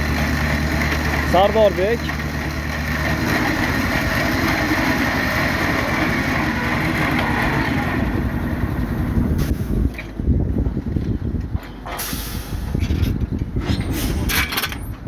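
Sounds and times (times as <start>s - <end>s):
engine running with low pulsing: 0.0s - 11.8s.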